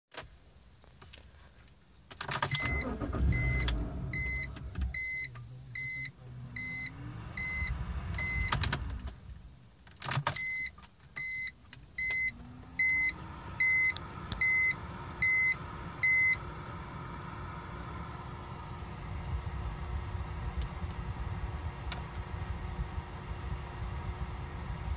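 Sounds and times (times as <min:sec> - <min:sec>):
car warning chime beeping: 0:02.6 - 0:08.9, 0:10.3 - 0:18.1.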